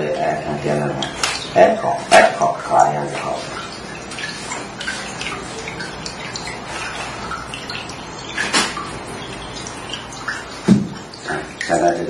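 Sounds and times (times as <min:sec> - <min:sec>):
dull thump: 0:10.6 - 0:11.0.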